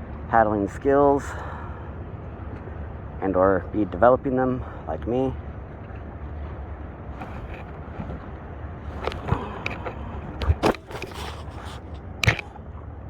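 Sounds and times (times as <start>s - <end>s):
wind and water wash: 0.0s - 13.0s
kayak paddle: 3.9s - 13.0s.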